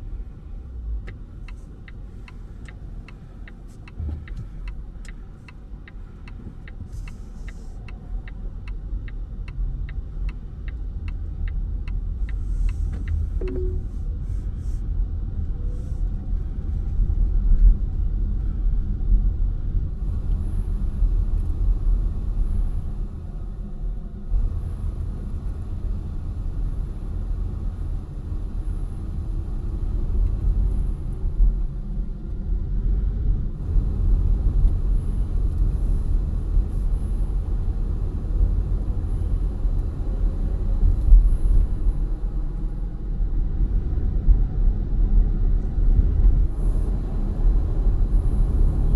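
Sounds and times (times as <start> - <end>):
road and tyre rumble: 0.0 - 48.9
faint high whine: 13.4 - 14.1.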